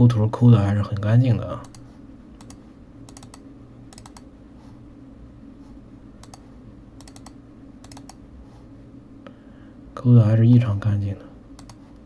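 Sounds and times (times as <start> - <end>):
steady low hum: 0.0 - 12.0
computer mouse clicks: 1.6 - 4.3, 6.2 - 8.2, 11.6 - 12.0.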